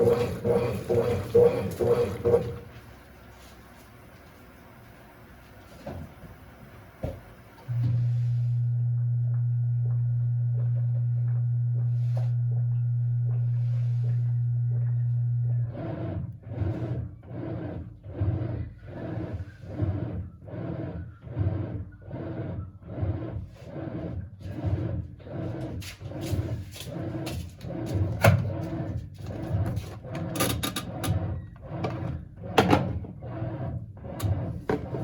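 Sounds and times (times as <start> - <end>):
washing machine swishing water: 0.0 - 8.6, 15.3 - 35.0
low electric hum: 0.0 - 17.1.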